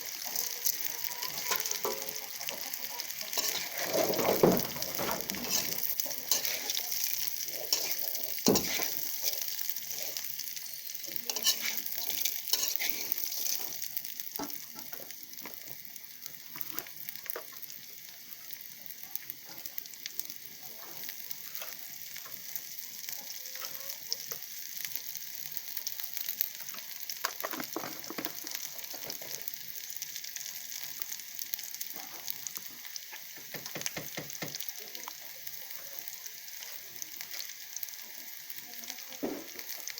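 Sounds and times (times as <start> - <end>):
food sizzling in oil: 0.0 - 39.9
spatula clicks and scrapes: 3.3 - 4.0, 4.9 - 9.5, 11.3 - 13.9.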